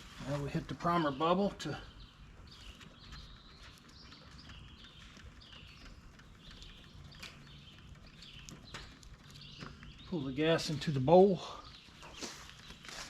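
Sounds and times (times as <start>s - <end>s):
bird chirping: 0.0s - 13.0s
outdoor background noise: 0.0s - 13.0s.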